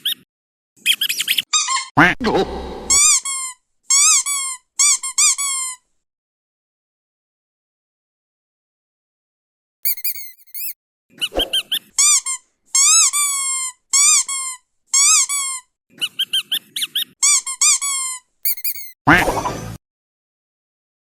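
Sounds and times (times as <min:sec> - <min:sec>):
squeaky dog toy: 0:00.9 - 0:02.2, 0:02.9 - 0:05.8, 0:09.8 - 0:10.8, 0:11.4 - 0:19.3.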